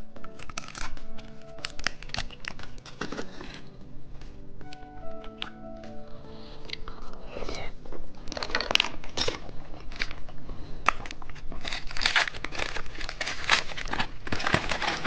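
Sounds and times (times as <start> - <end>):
plastic candy wrappers crinkling: 0.0 - 3.8, 6.6 - 15.0.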